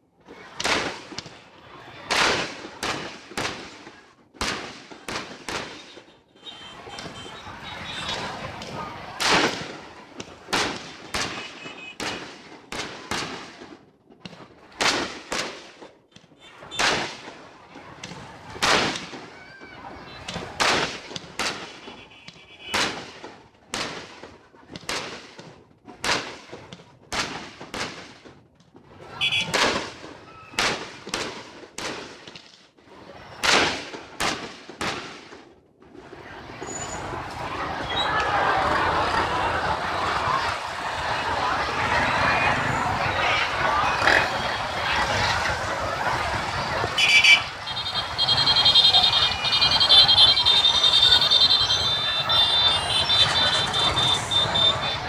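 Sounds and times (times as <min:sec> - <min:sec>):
background noise: 0:00.0 - 0:55.0
fireworks bursting with bangs: 0:00.3 - 0:37.2, 0:41.3 - 0:55.0
loud firework bangs with echo: 0:02.1 - 0:05.9, 0:09.2 - 0:13.8, 0:16.7 - 0:17.4, 0:18.6 - 0:19.3, 0:20.5 - 0:21.9, 0:22.7 - 0:24.2, 0:26.0 - 0:28.2, 0:33.4 - 0:35.4.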